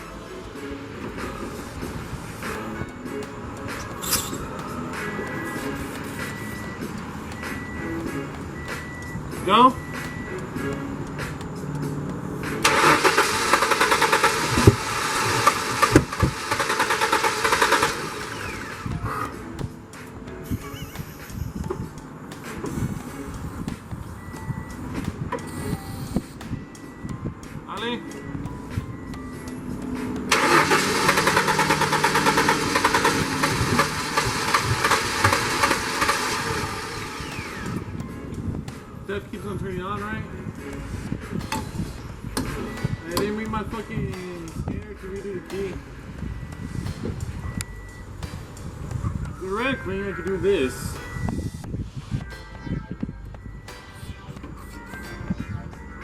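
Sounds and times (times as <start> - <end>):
starter cranking engine: 12.6 - 19.4, 30.2 - 38.0.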